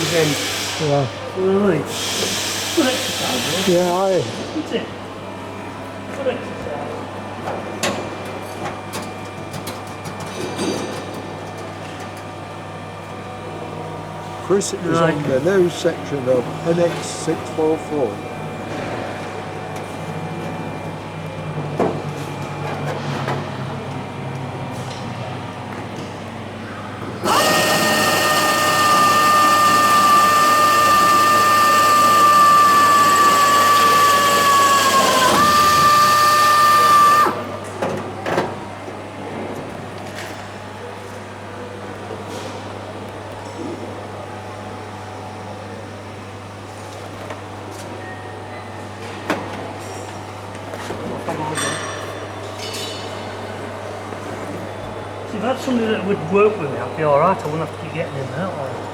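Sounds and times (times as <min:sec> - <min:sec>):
power drill whining: 0:27.2 - 0:37.6.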